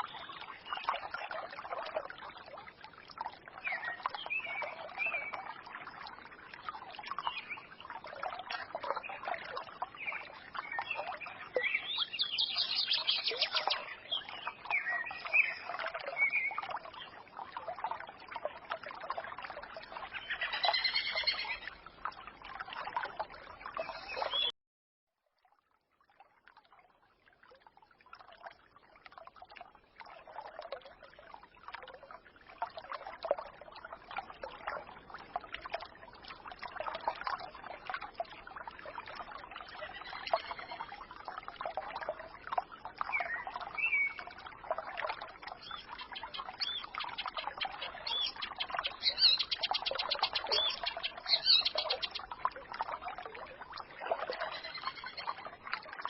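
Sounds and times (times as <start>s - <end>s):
forest stream trickling: 0.0s - 24.5s, 25.2s - 56.0s
songbirds chirping: 3.5s - 5.6s, 6.4s - 17.2s, 19.8s - 21.8s, 23.2s - 24.5s, 45.5s - 53.0s, 54.3s - 55.5s.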